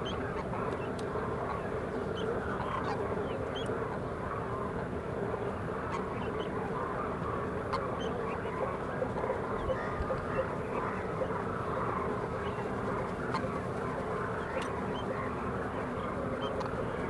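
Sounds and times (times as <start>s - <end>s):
flock of cranes calling: 5.9s - 17.0s.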